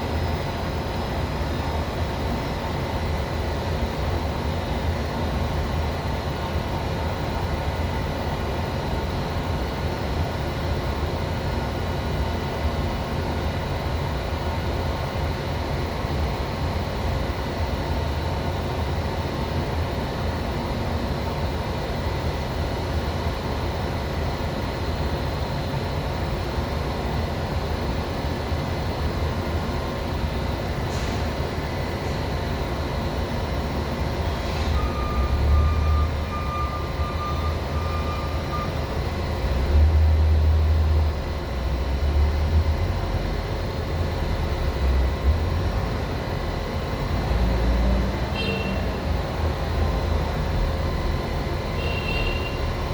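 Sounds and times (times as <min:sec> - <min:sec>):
machine hum with fixed tones: 0:31.4 - 0:52.9.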